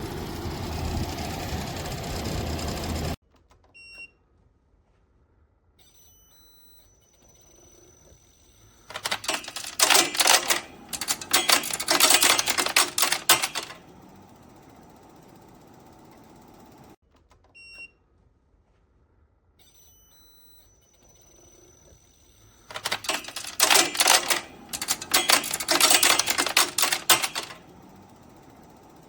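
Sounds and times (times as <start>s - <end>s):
fast rattling clatter: 8.9s - 17.0s, 22.7s - 29.0s
window air conditioner running: 8.9s - 17.0s, 22.7s - 29.0s.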